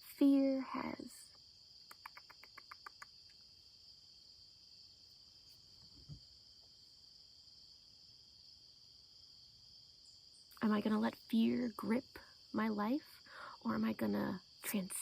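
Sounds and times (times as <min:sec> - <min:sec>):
crickets chirring: 0:00.0 - 0:15.0
soft low thump: 0:05.8 - 0:06.4.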